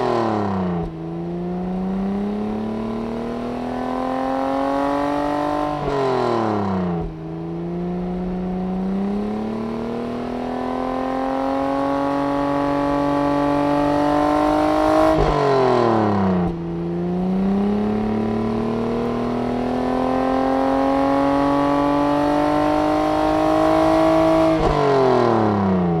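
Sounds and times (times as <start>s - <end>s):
car engine accelerating: 0.0s - 26.0s.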